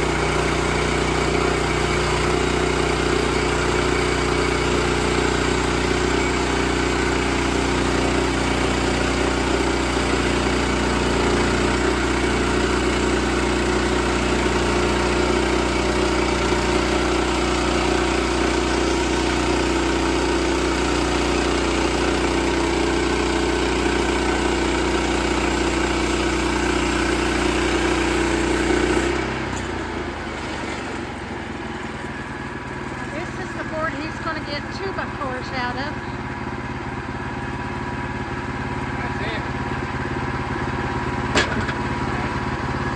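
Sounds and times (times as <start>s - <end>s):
sawmill engine running: 0.0s - 42.9s.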